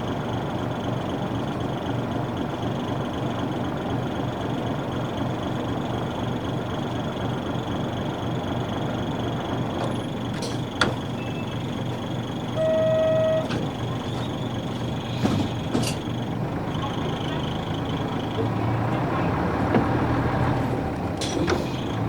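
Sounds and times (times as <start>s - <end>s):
bus diesel engine running: 0.0s - 22.0s
electronic beep: 11.2s - 11.6s, 12.6s - 13.6s.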